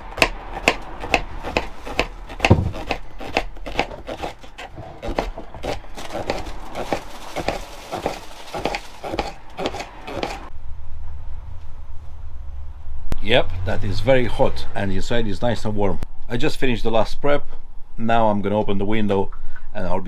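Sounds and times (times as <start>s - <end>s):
knife chopping on wooden board: 0.0s - 10.5s
low hum: 9.9s - 14.8s.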